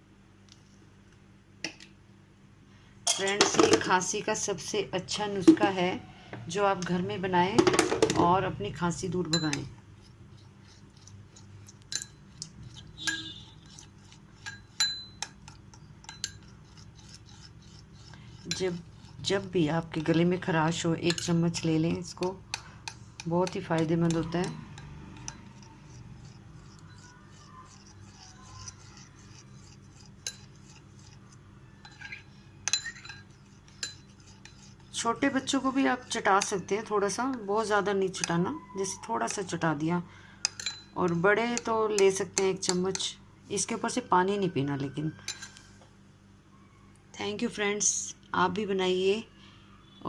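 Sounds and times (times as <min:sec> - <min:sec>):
spoon clinking against bowl: 0:09.2 - 0:09.7, 0:11.8 - 0:17.1, 0:20.0 - 0:21.4, 0:22.2 - 0:29.4, 0:31.8 - 0:34.7, 0:40.4 - 0:43.1, 0:45.2 - 0:45.6.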